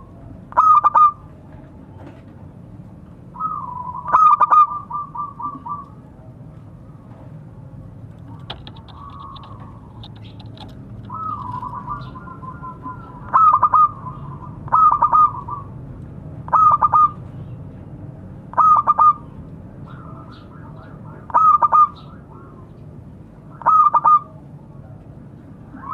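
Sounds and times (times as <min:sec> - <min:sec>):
dove cooing: 0:00.0 - 0:01.2, 0:03.4 - 0:06.0, 0:08.2 - 0:15.8, 0:16.5 - 0:17.2, 0:18.6 - 0:19.3, 0:19.9 - 0:22.7, 0:23.5 - 0:24.4.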